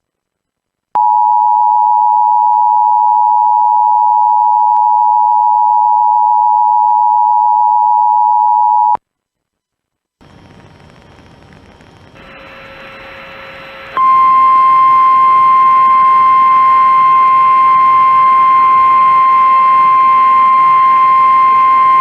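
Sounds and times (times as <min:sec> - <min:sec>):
radio hiss: 0:09.2 - 0:22.0
loud steady alarm tone: 0:12.2 - 0:22.0
quieter steady tone: 0:12.2 - 0:22.0.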